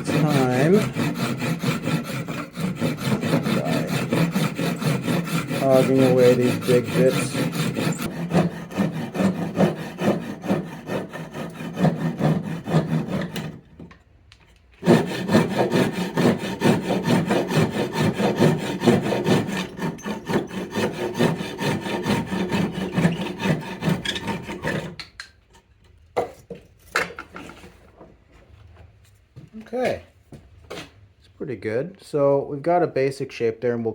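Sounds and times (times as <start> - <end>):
hand saw cutting wood: 0.0 - 13.9, 14.8 - 25.4.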